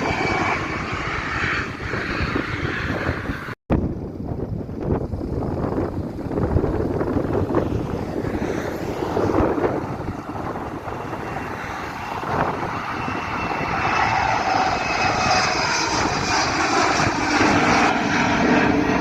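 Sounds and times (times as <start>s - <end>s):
high engine whine: 0.0s - 19.0s
jet engines at takeoff: 0.0s - 19.0s.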